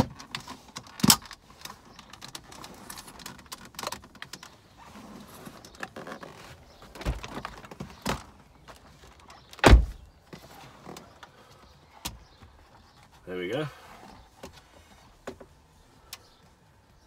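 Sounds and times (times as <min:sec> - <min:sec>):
plastic clips clicking and creaking: 0:00.0 - 0:04.6.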